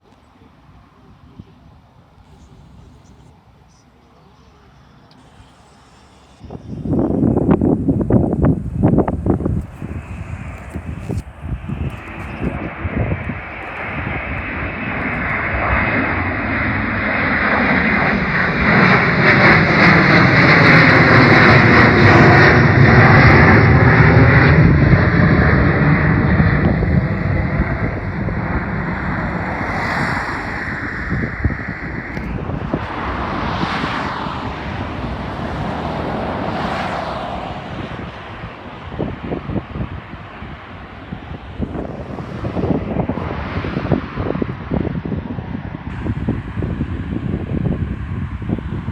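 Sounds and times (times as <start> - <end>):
airplane engines passing: 0.0 - 48.9
wind on microphone: 6.3 - 48.9.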